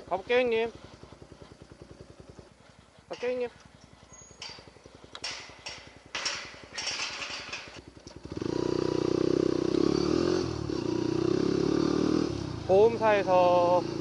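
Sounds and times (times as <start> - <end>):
motorcycle engine: 0.0 - 14.0
clattering knocks: 4.3 - 7.8.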